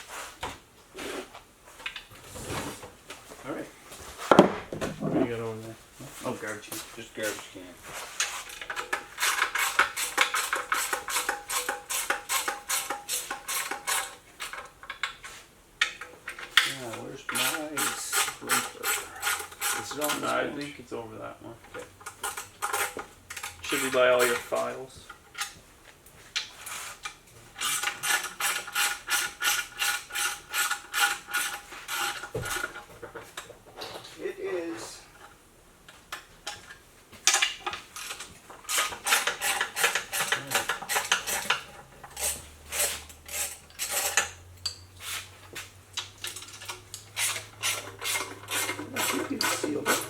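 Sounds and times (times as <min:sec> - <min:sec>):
metal scrape: 0:07.2 - 0:14.6, 0:16.3 - 0:20.8, 0:22.0 - 0:24.8, 0:26.5 - 0:32.9, 0:37.9 - 0:50.0
hand tools tapping engine parts: 0:08.2 - 0:20.8, 0:21.6 - 0:34.2, 0:35.0 - 0:50.0.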